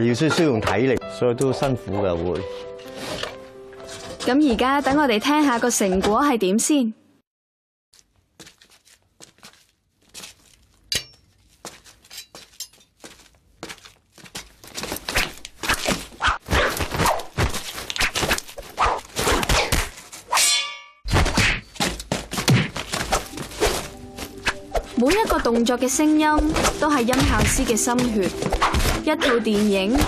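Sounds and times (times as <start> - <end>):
footsteps: 8.0 - 19.2, 21.2 - 30.0
thuds and hits: 21.1 - 23.9, 26.4 - 29.0.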